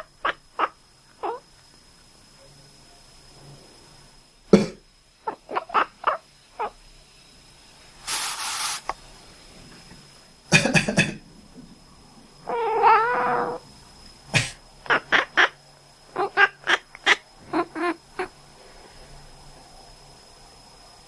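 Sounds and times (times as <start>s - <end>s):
person coughing: 4.6s - 4.8s, 10.5s - 11.2s, 14.4s - 14.6s
cat chirping: 12.5s - 13.6s, 16.2s - 18.0s
cat wavering call: 12.5s - 13.6s.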